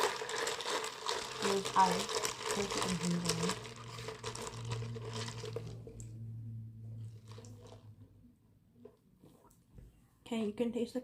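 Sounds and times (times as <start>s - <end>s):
ice crunching and rattling: 0.0s - 5.8s.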